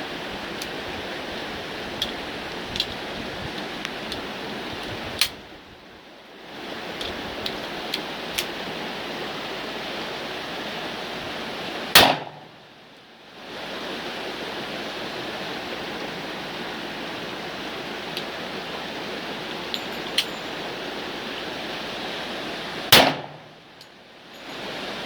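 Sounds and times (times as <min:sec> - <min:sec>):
rifle shots: 0:12.0 - 0:12.5, 0:22.9 - 0:23.6.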